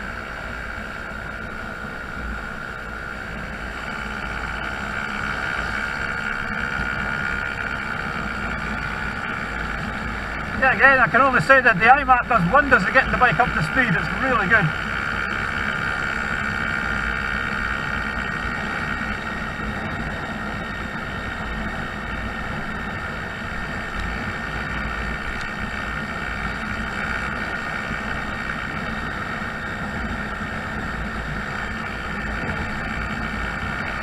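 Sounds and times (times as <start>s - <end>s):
scooter engine running: 0.0s - 34.0s
wind and road noise: 0.0s - 34.0s.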